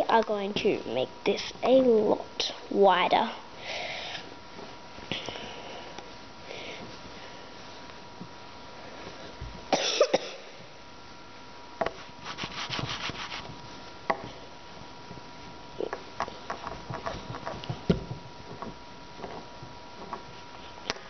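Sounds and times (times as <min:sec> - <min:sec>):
rolling pin rubbing dough: 0:11.8 - 0:13.6.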